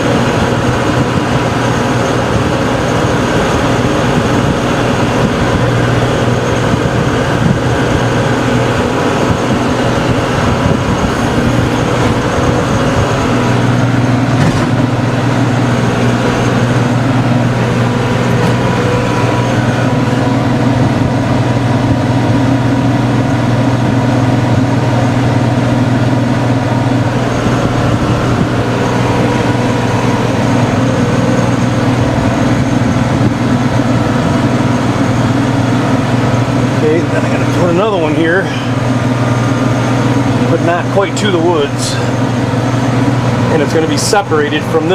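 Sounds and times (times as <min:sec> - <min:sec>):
rotary tiller turning soil: 0:00.0 - 0:20.9
tractor engine running: 0:00.0 - 0:44.9.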